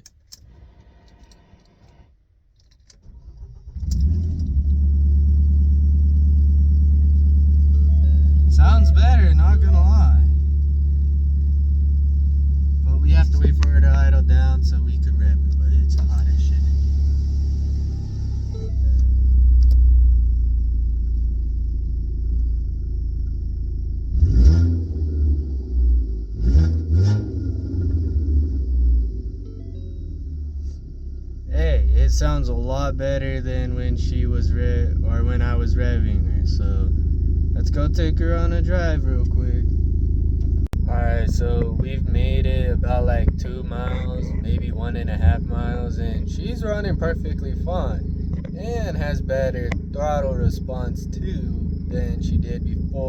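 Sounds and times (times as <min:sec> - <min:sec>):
car engine cranking and idling: 0:00.0 - 0:53.0
faint click: 0:18.9 - 0:19.8.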